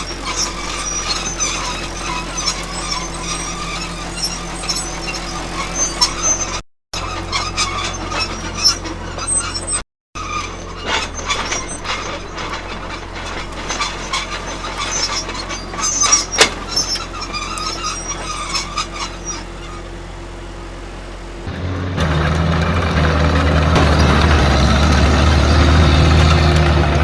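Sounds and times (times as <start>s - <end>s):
clattering running gear: 0.0s - 20.2s
tank engine hum: 0.0s - 27.0s.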